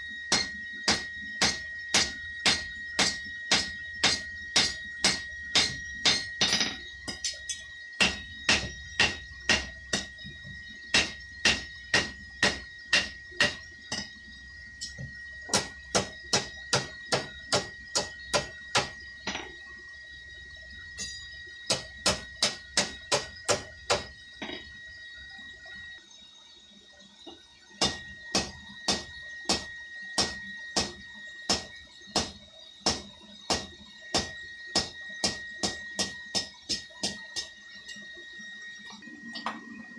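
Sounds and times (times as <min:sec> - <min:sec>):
steady high tone: 0:00.0 - 0:25.4
hammer striking steel on anvil: 0:00.3 - 0:10.2, 0:10.9 - 0:14.1, 0:14.8 - 0:19.5, 0:21.0 - 0:24.6, 0:27.8 - 0:37.5.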